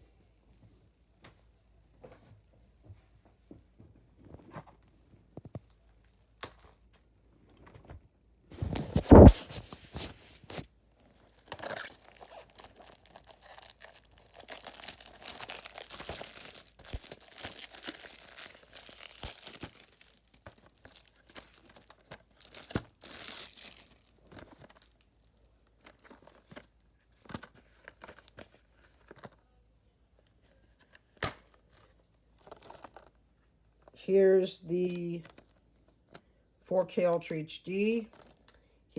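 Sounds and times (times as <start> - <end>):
plastic shrink wrap crackling: 8.6 - 29.3, 31.2 - 33.2.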